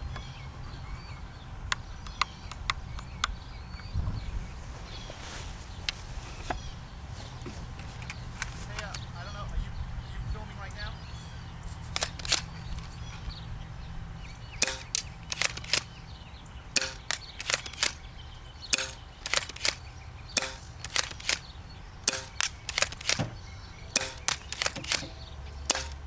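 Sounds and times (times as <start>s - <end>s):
airsoft shotgun pumping and firing: 11.8s - 13.0s, 14.6s - 15.9s, 16.8s - 18.0s, 18.7s - 19.8s, 20.4s - 26.0s.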